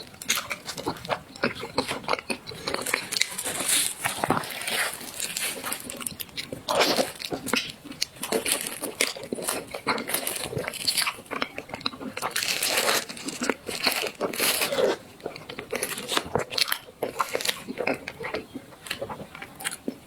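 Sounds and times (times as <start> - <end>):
close eating and chewing: 0.0 - 20.0.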